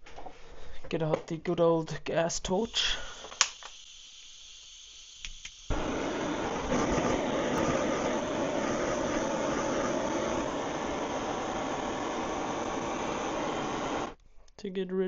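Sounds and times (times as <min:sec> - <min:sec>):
gas torch flame hissing: 0:02.5 - 0:14.2
torch igniter clicks: 0:03.2 - 0:03.9, 0:05.2 - 0:14.2.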